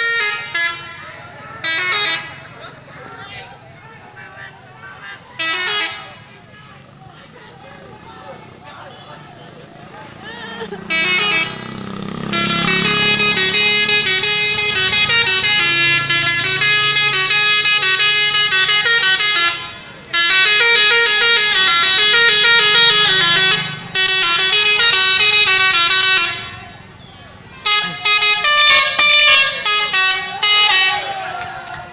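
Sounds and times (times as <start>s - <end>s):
multi-tone bus horn tune: 0.0s - 2.6s, 5.3s - 6.6s, 10.7s - 27.0s, 27.6s - 31.5s.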